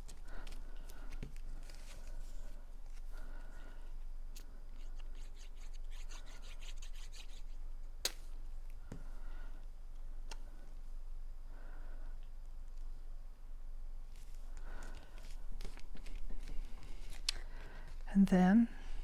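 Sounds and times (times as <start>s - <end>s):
paper rustling and creasing: 0.0s - 3.3s, 14.1s - 18.1s.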